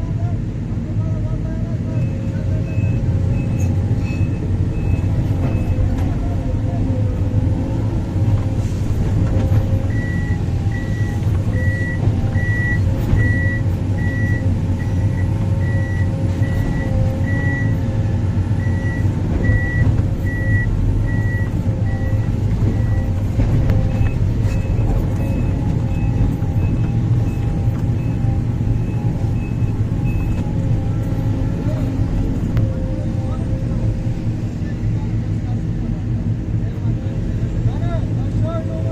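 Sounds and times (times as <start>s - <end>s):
diesel engine running: 0.0s - 38.9s
backup alarm beeping: 9.8s - 17.8s, 18.6s - 31.9s.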